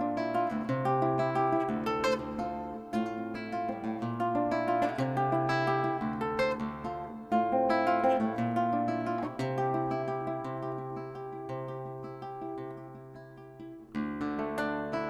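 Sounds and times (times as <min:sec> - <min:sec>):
acoustic guitar playing: 0:00.0 - 0:15.0.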